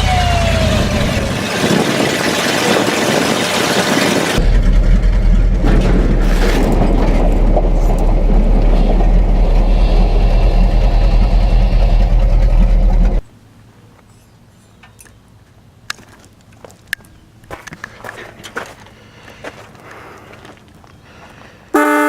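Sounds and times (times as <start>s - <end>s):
truck horn blaring: 21.8s - 22.0s.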